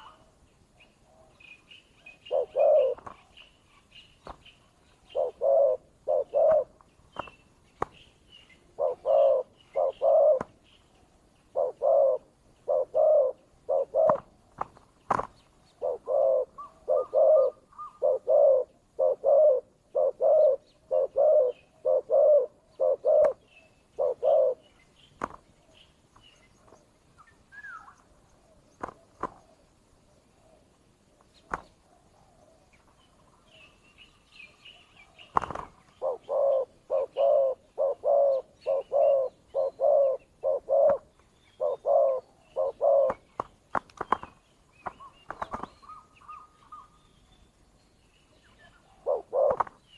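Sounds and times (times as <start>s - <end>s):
doves cooing: 2.2s - 3.3s, 5.0s - 7.3s, 8.7s - 10.6s, 11.5s - 25.7s, 35.0s - 46.9s, 48.8s - 49.9s.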